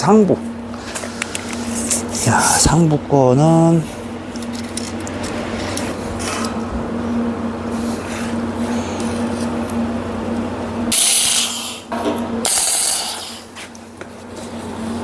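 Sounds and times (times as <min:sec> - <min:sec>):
workshop hum: 0:00.0 - 0:15.0
welding arc hiss and crackle: 0:10.9 - 0:14.0.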